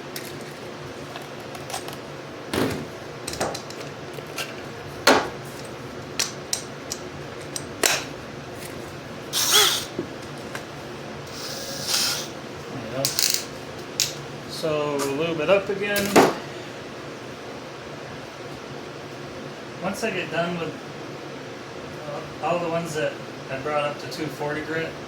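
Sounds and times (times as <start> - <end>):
tools knocking and clattering: 2.6 - 8.8.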